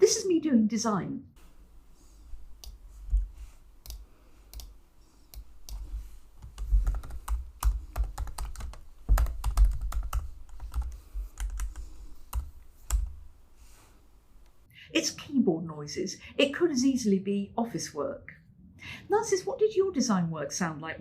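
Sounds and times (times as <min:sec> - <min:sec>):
keyboard typing: 0:02.6 - 0:13.2.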